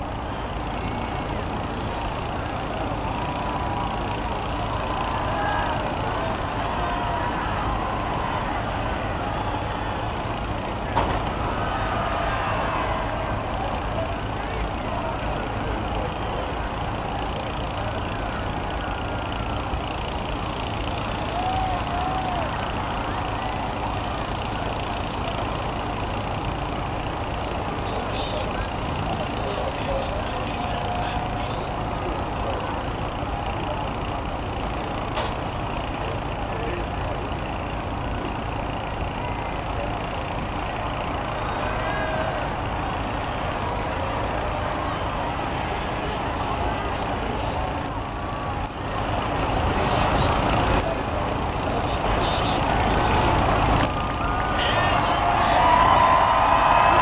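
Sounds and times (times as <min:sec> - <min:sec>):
heavy engines running: 0:00.0 - 0:57.0.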